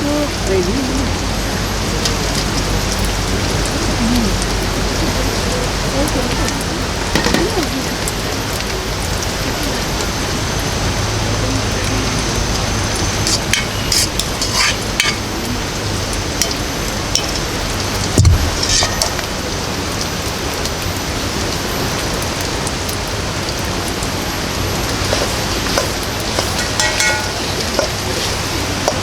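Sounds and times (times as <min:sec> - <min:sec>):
steady rain: 0:00.0 - 0:29.0
dull thump: 0:18.2 - 0:19.0
sharp drips or clinks: 0:24.9 - 0:29.0.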